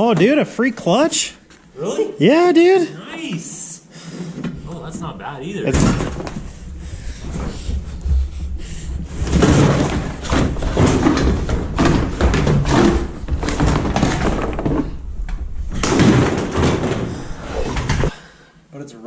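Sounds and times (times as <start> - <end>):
car parts knocking and clattering: 5.7 - 18.1.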